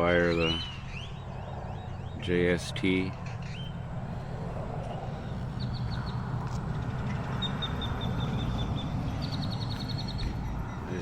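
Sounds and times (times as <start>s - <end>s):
small bird chirping: 0.0s - 3.9s, 7.3s - 11.0s
steady low rumble: 0.9s - 10.9s.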